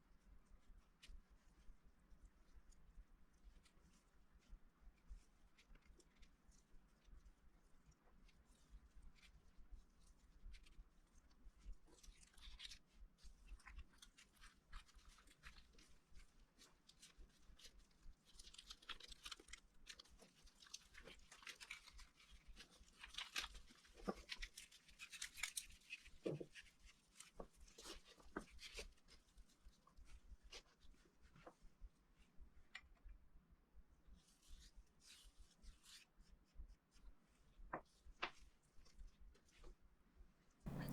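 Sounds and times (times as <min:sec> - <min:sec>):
seaweed sheet crinkling and rustling: 0:08.4 - 0:31.6, 0:40.7 - 0:40.9.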